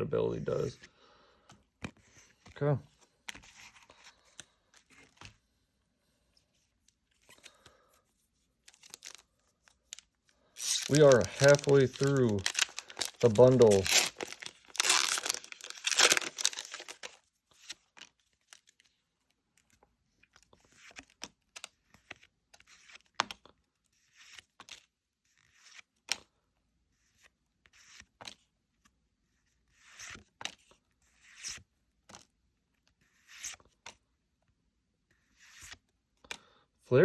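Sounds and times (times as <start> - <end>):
foil wrapper tearing and crinkling: 10.6 - 17.2.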